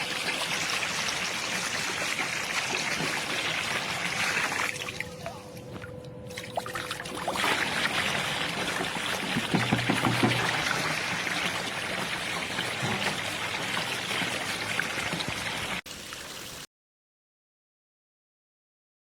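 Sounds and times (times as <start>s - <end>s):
water pouring into pool: 0.0s - 5.4s, 6.3s - 16.7s.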